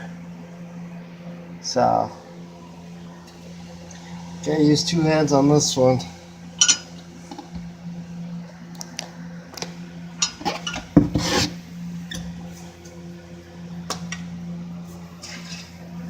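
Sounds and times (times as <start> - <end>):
steady low hum: 0.0 - 16.0
hands rubbing and scraping parts: 10.3 - 11.6.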